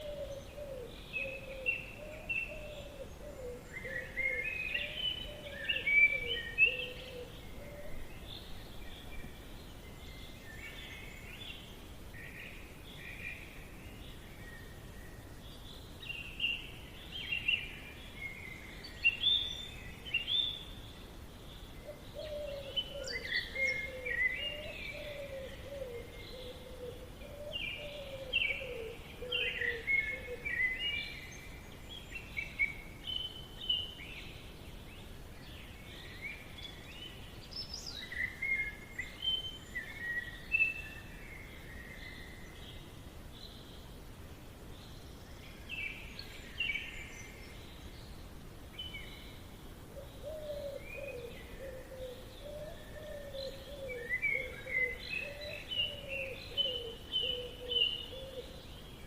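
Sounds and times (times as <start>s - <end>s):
low wavering bird calls: 0.0s - 8.6s, 21.8s - 34.0s, 49.9s - 59.0s
birds chirping and trilling: 0.0s - 44.0s, 44.6s - 59.0s.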